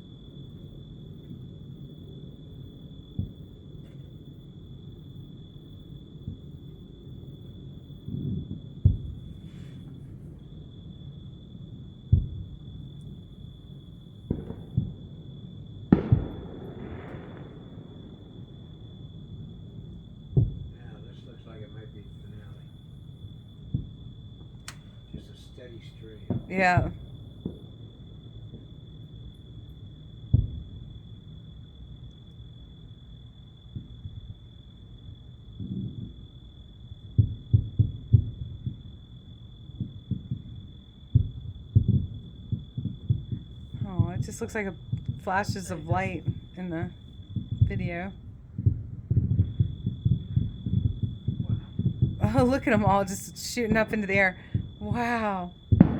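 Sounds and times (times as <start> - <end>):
distant fireworks booming: 0.0 - 55.9
firework crackling fizz: 15.9 - 19.0, 43.0 - 55.9.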